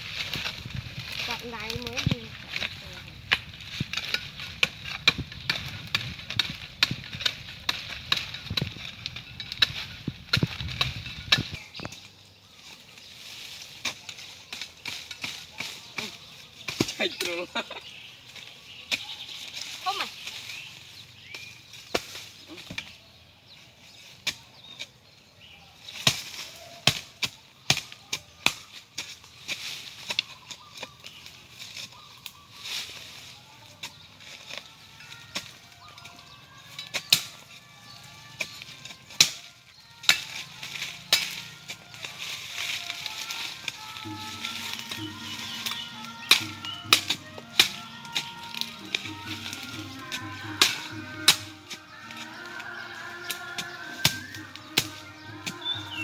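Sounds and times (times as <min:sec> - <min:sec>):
hand tool chopping strikes: 0:38.4 - 0:42.1, 0:44.1 - 0:51.8, 0:53.3 - 0:56.0.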